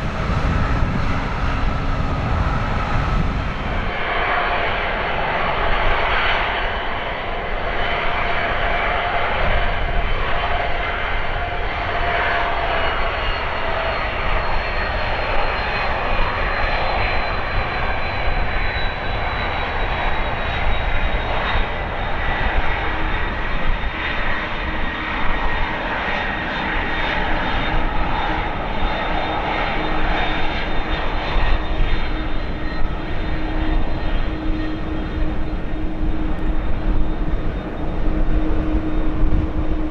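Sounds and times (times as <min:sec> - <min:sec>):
jet engines roaring with whine: 0:00.0 - 0:39.9.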